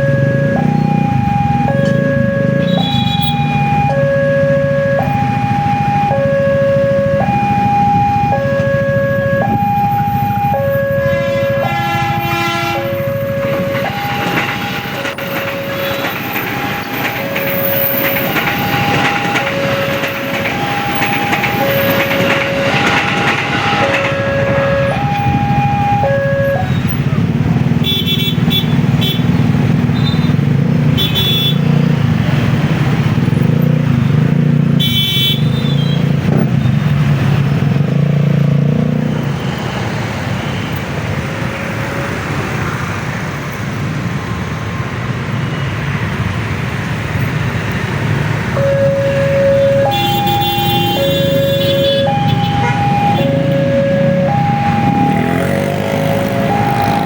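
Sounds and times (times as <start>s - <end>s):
level crossing two-tone alarm: 0.0s - 26.9s, 48.4s - 57.0s
road traffic rumble: 0.0s - 57.0s
car horn toots: 1.8s - 3.6s, 10.9s - 25.3s, 27.8s - 29.4s, 30.0s - 31.7s, 34.8s - 36.6s, 48.6s - 54.4s.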